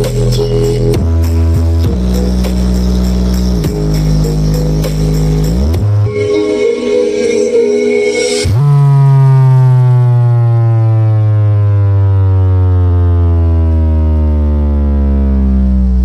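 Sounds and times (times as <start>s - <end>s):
loud trap music: 0.0s - 9.6s
deep synth bass glide: 0.0s - 16.0s.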